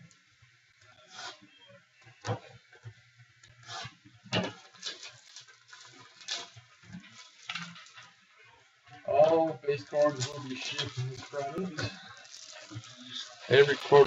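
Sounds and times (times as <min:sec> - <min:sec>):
trading cards rustling: 0:09.7 - 0:14.0.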